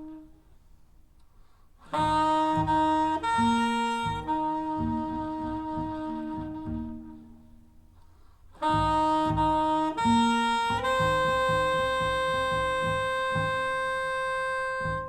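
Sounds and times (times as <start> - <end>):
jazz saxophone: 0.0 - 0.8, 1.8 - 15.0
plucked double bass: 2.0 - 7.6, 8.6 - 15.0.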